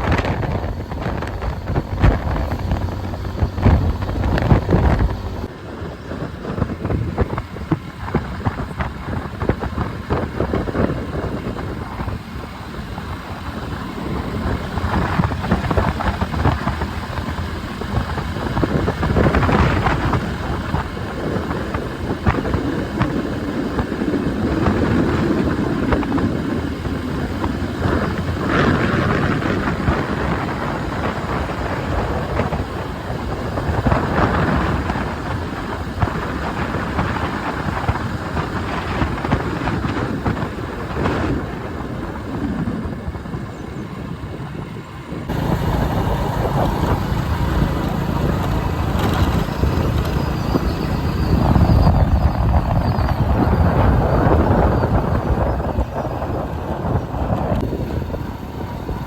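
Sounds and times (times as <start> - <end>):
wind buffeting microphone: 0.0 - 59.0.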